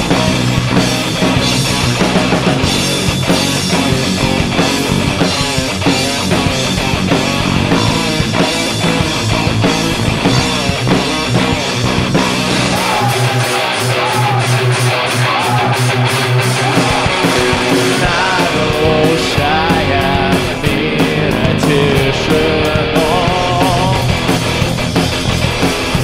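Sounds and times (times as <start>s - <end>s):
electric guitar melody: 0.0s - 26.0s
rock band playing live: 0.0s - 26.0s
cymbal strokes: 16.4s - 19.6s.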